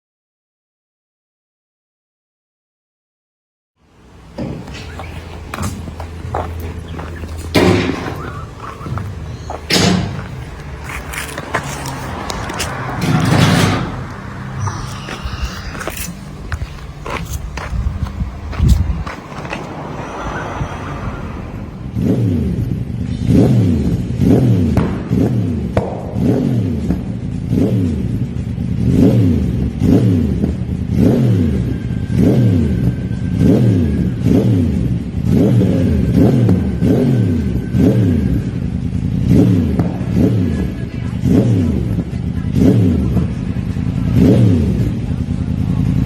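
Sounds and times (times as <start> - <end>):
exhaust pops and crackles: 4.3 - 19.8, 24.7 - 27.7, 39.3 - 43.5
motorcycle engine revving: 4.3 - 46.0.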